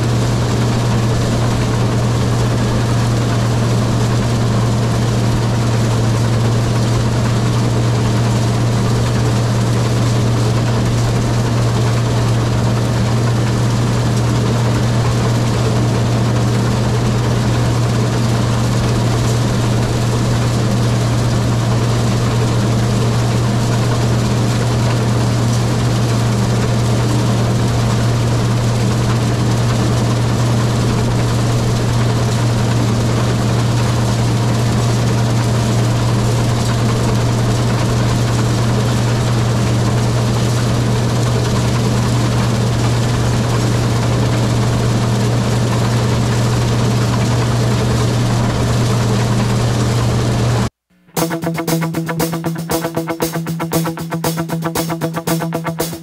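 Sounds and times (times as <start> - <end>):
combine harvester droning: 0.0 - 34.3.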